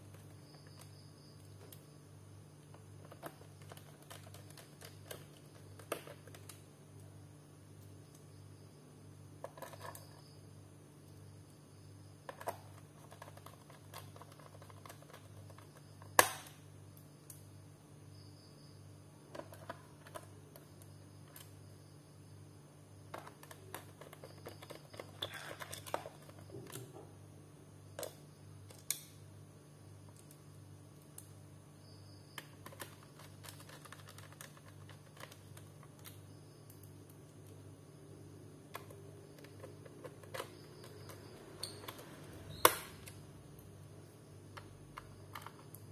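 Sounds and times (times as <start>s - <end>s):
plastic parts clicking: 44.5s - 45.9s.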